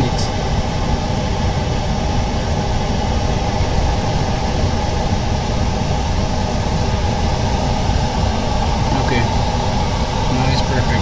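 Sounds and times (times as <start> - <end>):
mechanical drone: 0.0 - 11.0.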